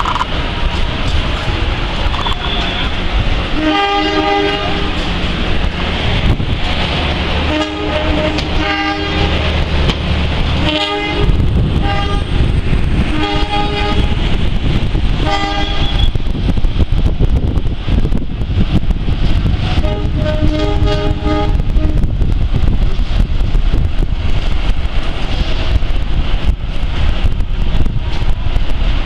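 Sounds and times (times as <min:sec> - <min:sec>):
low rumble of moving train: 0:00.0 - 0:29.0
locomotive horn short blasts: 0:02.2 - 0:03.0, 0:03.6 - 0:04.9, 0:07.5 - 0:09.3, 0:10.6 - 0:12.3, 0:13.1 - 0:14.1, 0:15.3 - 0:16.2, 0:19.8 - 0:22.0.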